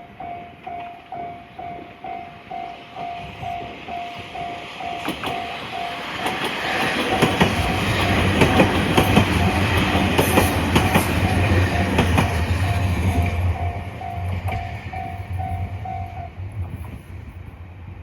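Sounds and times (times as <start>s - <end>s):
level crossing alarm ringing: 0.0s - 16.4s
train rumbling past: 0.0s - 18.0s
train wheels clicking over rail joints: 3.2s - 17.4s.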